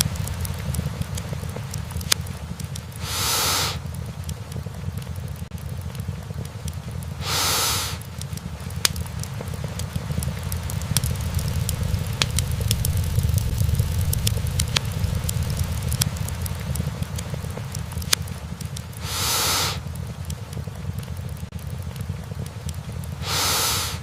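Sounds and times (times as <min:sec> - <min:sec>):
fire crackles and pops: 0:00.0 - 0:24.0
fire flames rumbling: 0:00.0 - 0:24.0
brief hiss: 0:03.0 - 0:03.8, 0:07.2 - 0:08.0, 0:19.0 - 0:19.8, 0:23.2 - 0:24.0.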